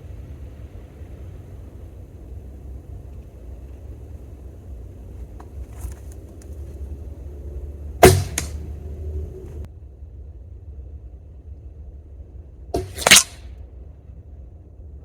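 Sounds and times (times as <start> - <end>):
steady low rumble: 0.0 - 12.7
arrow striking stump: 5.2 - 6.9, 8.0 - 9.7, 12.8 - 13.4
bowstring crack: 5.2 - 9.7, 12.8 - 13.4
short lingering hum: 6.2 - 9.7.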